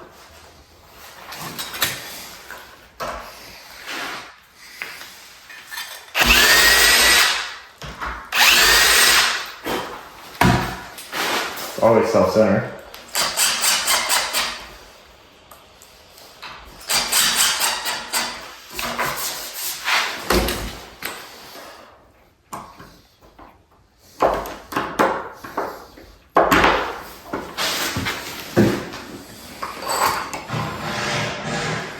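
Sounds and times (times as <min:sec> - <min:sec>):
cordless drill drilling: 0:06.2 - 0:07.6, 0:08.3 - 0:09.6.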